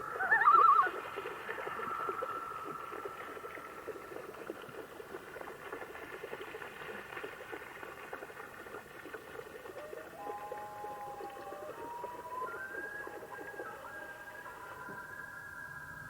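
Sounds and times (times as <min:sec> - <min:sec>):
loon call: 0:09.8 - 0:15.3.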